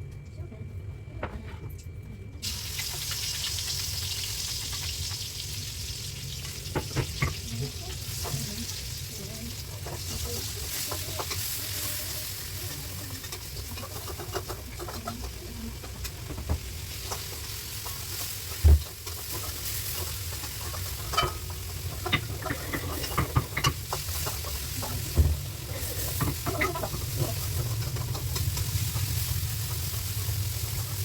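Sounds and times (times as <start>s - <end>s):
chicken sizzling in a pan: 2.4s - 31.0s
spatula scraping a pan: 19.0s - 25.0s.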